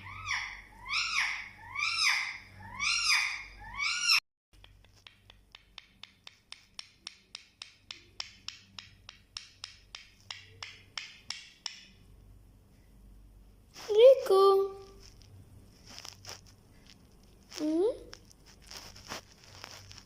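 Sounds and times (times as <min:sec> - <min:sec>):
parrot whistled calls: 0:00.0 - 0:04.2.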